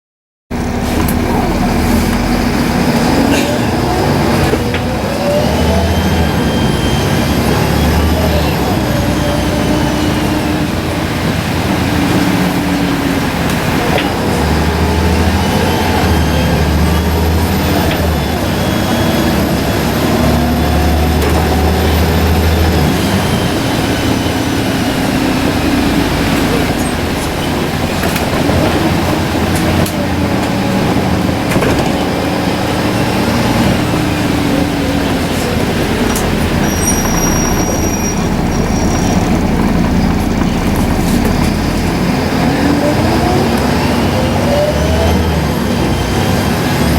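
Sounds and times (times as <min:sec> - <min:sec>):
diesel bus engine droning: 0:00.5 - 0:46.9
heavy low rumble: 0:00.5 - 0:46.9
turbo whistle: 0:36.5 - 0:41.8.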